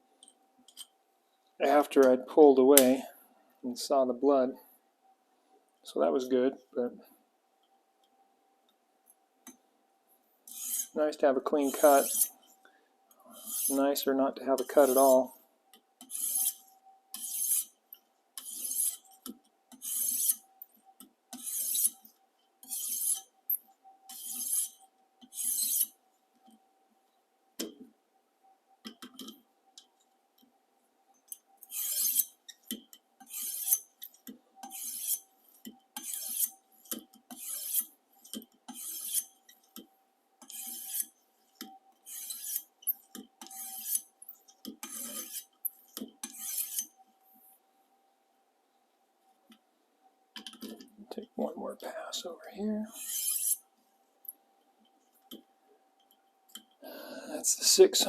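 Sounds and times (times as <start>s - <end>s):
faint steady hum: 0.0s - 58.0s
sharpening stone scraping knife: 10.5s - 11.0s, 11.6s - 12.5s, 13.4s - 13.8s, 16.0s - 17.8s, 18.4s - 19.1s, 19.7s - 20.4s, 21.3s - 23.3s, 24.1s - 26.0s, 31.6s - 32.4s, 33.2s - 36.6s, 37.3s - 39.6s, 40.4s - 41.2s, 42.0s - 45.6s, 46.2s - 47.0s, 52.9s - 53.7s.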